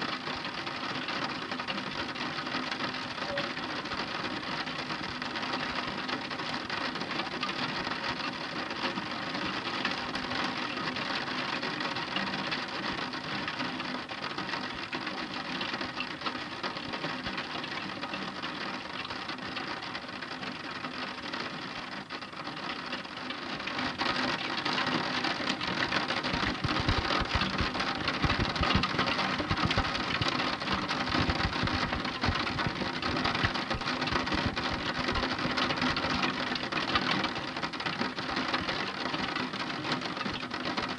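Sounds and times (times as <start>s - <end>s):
heavy rain falling: 0.0s - 40.9s
dull low thumps: 26.4s - 35.4s.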